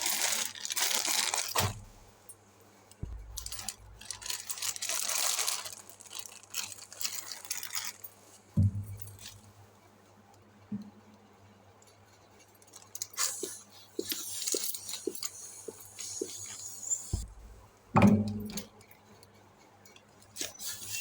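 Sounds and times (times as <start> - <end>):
plastic packaging rustling: 0.0 - 2.2, 3.0 - 9.5, 12.7 - 17.7
dull thump: 3.0 - 4.3, 8.6 - 9.3, 17.1 - 18.7
small knock: 8.6 - 9.1, 17.2 - 18.7.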